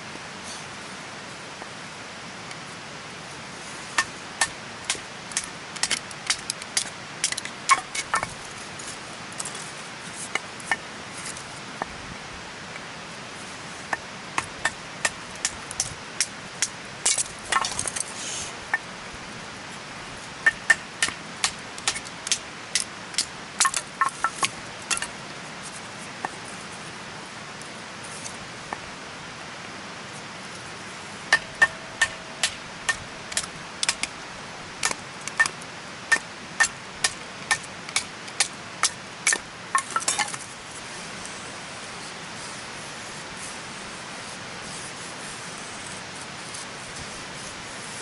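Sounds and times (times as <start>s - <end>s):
metal striking metal: 31.3s - 34.0s.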